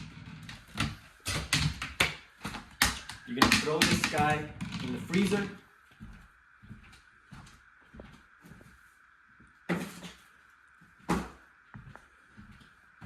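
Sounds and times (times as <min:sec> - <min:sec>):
freezer door opening and shutting: 0:00.0 - 0:05.4.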